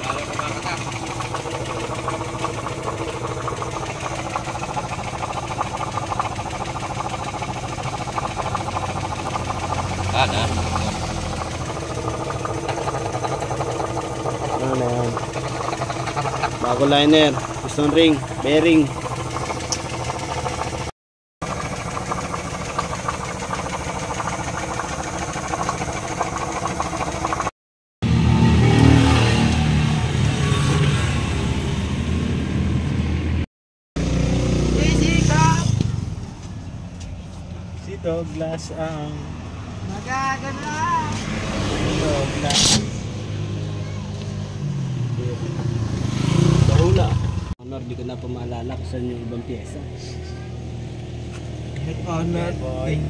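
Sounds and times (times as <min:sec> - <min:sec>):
engine running with fast pulse: 0:00.0 - 0:33.4.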